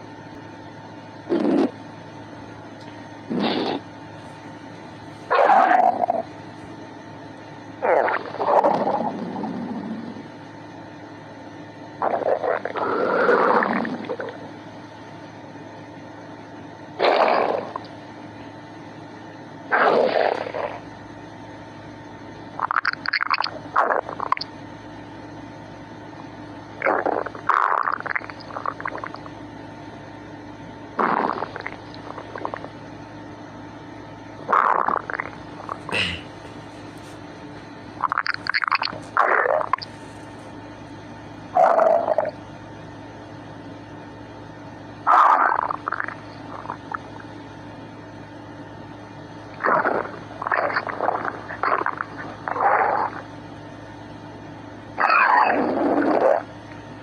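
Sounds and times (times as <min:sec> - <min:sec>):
stomach growling: 0:01.3 - 0:01.8, 0:02.9 - 0:03.9, 0:05.3 - 0:06.3, 0:07.8 - 0:10.3, 0:12.0 - 0:14.5, 0:17.0 - 0:18.0, 0:19.7 - 0:20.9, 0:22.5 - 0:24.5, 0:26.8 - 0:29.4, 0:31.0 - 0:32.8, 0:34.4 - 0:37.2, 0:38.0 - 0:40.6, 0:41.5 - 0:42.4, 0:45.0 - 0:47.4, 0:49.5 - 0:53.3, 0:55.0 - 0:56.5.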